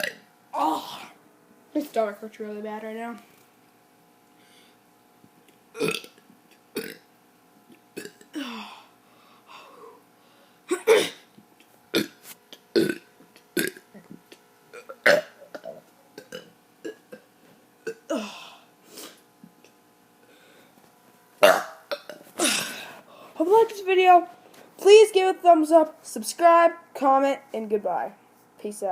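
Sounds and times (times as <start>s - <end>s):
child burping: 0.0s - 1.2s, 5.7s - 6.2s, 6.8s - 7.0s, 8.0s - 8.8s, 10.7s - 11.3s, 11.9s - 14.1s, 14.7s - 18.6s, 21.4s - 22.9s.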